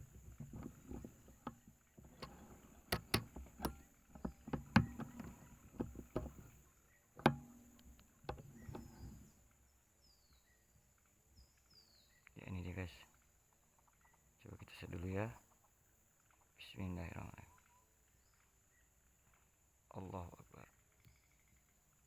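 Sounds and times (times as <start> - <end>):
handling knocks and clicks: 0.0 - 9.3
faint bird chirps: 6.4 - 22.0.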